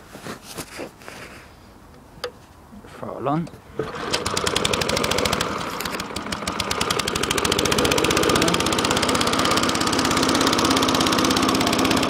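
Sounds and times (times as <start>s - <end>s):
lawn mower engine running: 3.7s - 12.0s.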